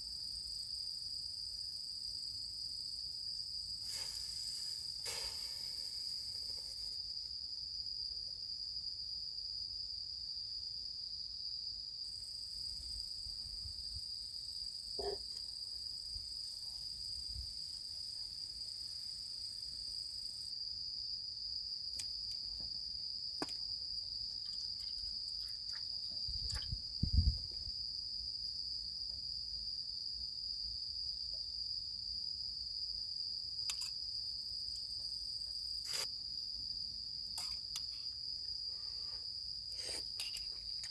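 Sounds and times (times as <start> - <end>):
insects chirring: 0.0 - 7.7, 12.1 - 20.6, 21.6 - 28.3, 33.0 - 40.9.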